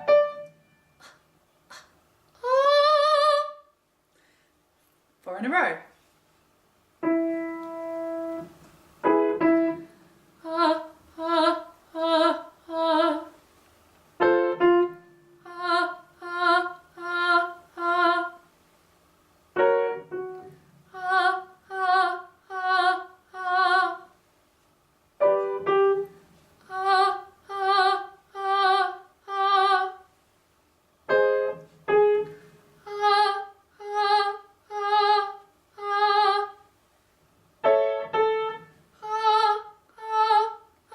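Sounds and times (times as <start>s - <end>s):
piano cue: 0.0s - 1.0s, 7.0s - 9.9s, 19.6s - 21.2s, 25.2s - 26.2s, 37.6s - 39.4s.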